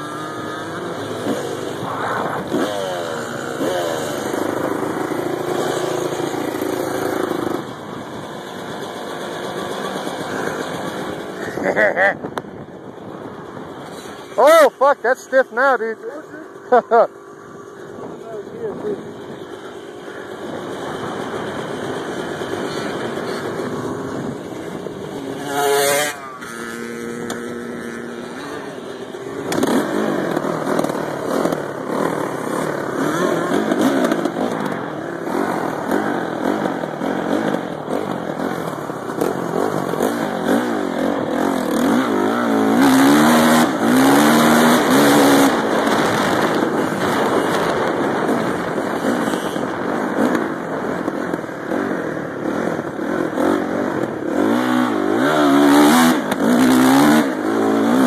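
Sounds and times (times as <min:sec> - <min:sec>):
dirt bike engine revving: 0:00.0 - 0:58.0.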